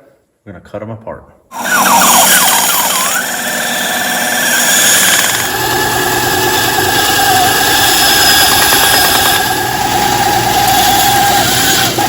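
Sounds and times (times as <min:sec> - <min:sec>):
high squeal: 0:01.5 - 0:05.4
power tool cutting wood: 0:01.5 - 0:12.0.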